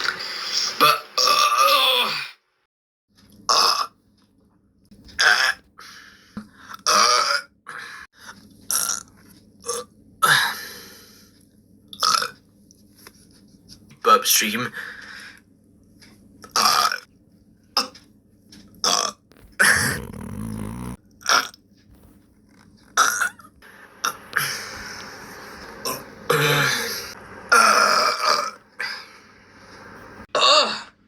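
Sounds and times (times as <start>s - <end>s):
person burping: 18.9s - 21.0s.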